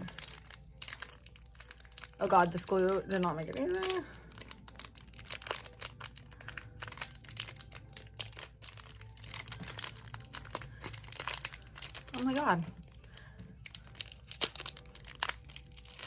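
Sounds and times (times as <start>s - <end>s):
foil pack crinkling: 0.0s - 16.0s.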